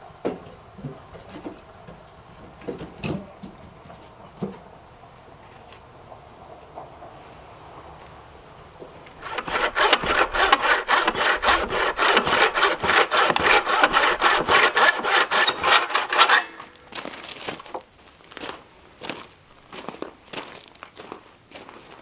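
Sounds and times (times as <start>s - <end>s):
hand saw cutting wood: 9.2s - 16.8s.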